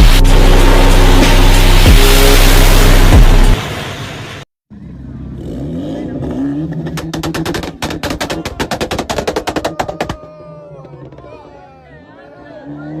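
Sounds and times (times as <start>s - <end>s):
car engine revving: 4.7s - 9.8s
exhaust pops and bangs: 6.8s - 11.3s.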